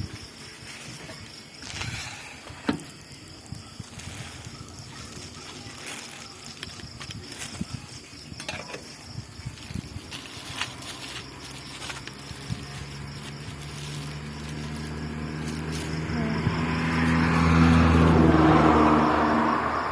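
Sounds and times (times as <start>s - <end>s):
vehicle engine hum: 9.2s - 19.9s.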